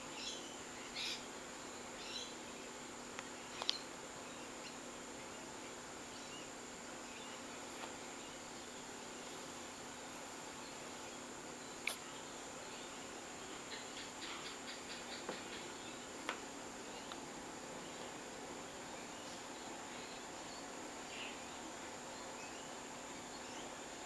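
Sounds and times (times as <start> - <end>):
insect chorus drone: 0.0 - 24.0
faint clicks: 3.2 - 3.8.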